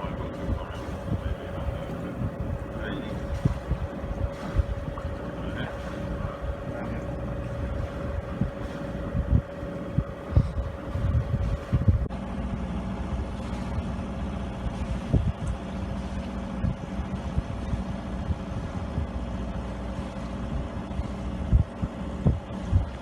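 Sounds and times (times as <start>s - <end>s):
boat motor droning: 0.0s - 12.1s
steady hum: 0.0s - 12.1s
wind buffeting microphone: 0.0s - 12.1s.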